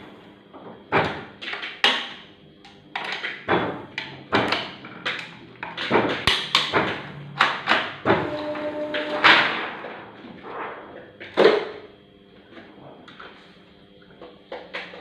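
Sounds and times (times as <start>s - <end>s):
printing press running: 3.3s - 11.9s.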